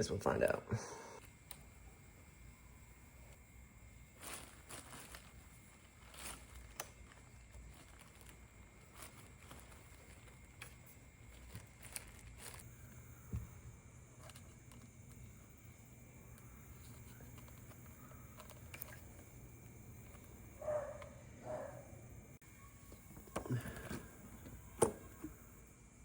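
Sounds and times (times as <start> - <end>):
low steady hum: 0.0 - 26.0
engine parts clicking and scraping: 16.3 - 21.1.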